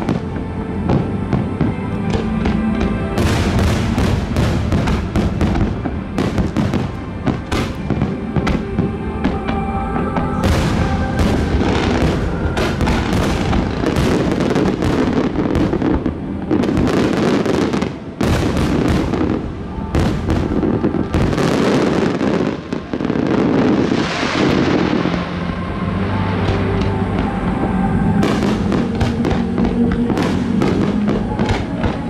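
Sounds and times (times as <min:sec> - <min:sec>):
fireworks bursting: 0:00.0 - 0:32.0
fireworks crackling: 0:00.0 - 0:32.0
music over loudspeakers: 0:00.0 - 0:32.0.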